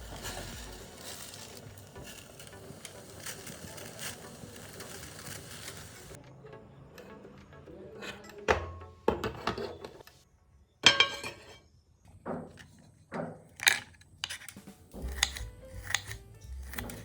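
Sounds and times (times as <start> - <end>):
dishes and utensils clinking: 7.9 - 10.1, 10.8 - 11.7, 12.3 - 17.0.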